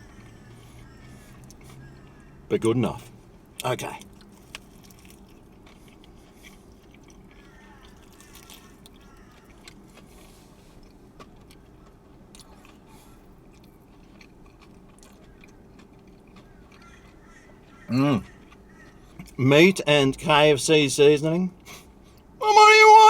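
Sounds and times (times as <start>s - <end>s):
chewing fried chicken: 0.0s - 2.5s, 3.2s - 19.4s
steady low hum: 0.0s - 22.4s.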